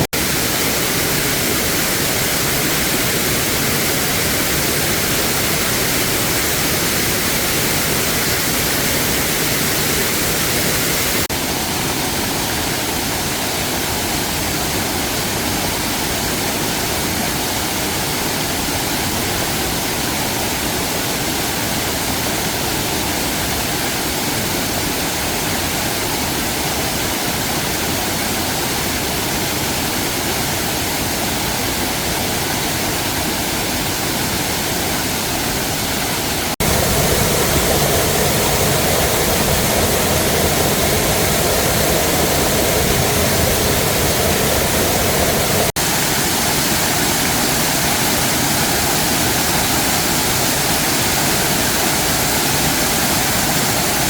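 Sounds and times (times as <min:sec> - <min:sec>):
waterfall rushing: 0:00.0 - 0:54.0.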